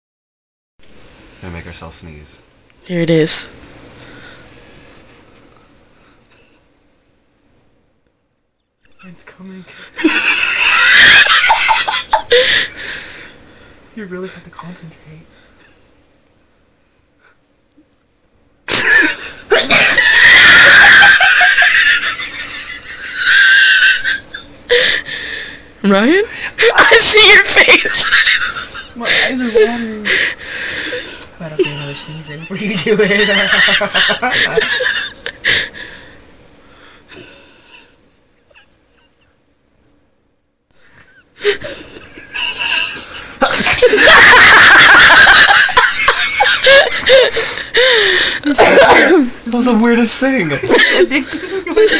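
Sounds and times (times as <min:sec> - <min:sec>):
person laughing loudly: 0:10.0 - 0:12.7, 0:18.7 - 0:25.0, 0:31.5 - 0:36.1, 0:41.4 - 0:49.3, 0:50.6 - 0:51.9
girl laughing high-pitched: 0:19.5 - 0:22.2, 0:41.4 - 0:49.3
girl sneezing: 0:48.5 - 0:49.3.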